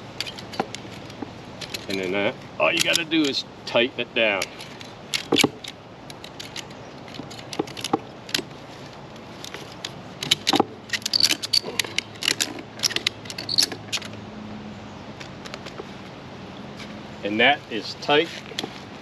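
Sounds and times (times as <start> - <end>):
ratchet strap clicking: 0.1 - 2.2, 2.8 - 3.4, 4.4 - 14.2.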